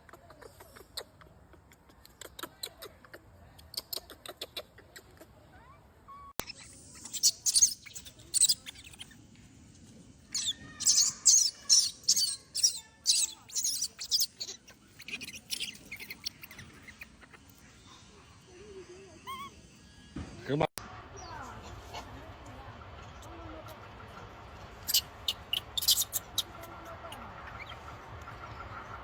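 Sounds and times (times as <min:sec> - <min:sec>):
young monkey screaming: 0:05.6 - 0:09.1, 0:10.3 - 0:17.4, 0:19.2 - 0:19.6, 0:24.8 - 0:27.8.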